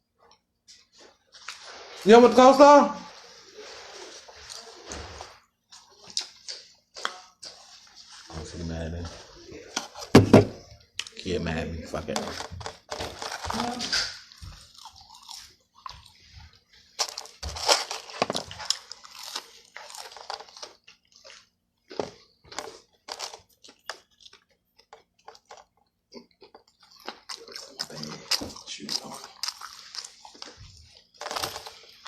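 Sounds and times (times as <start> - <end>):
person chewing crunchy food: 3.2 - 8.4, 12.1 - 32.0.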